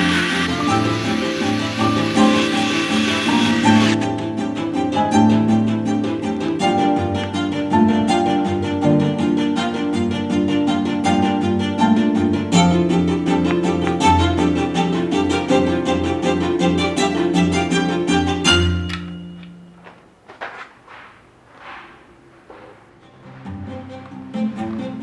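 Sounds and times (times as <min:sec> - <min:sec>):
music with strings and beat: 0:03.9 - 0:18.8.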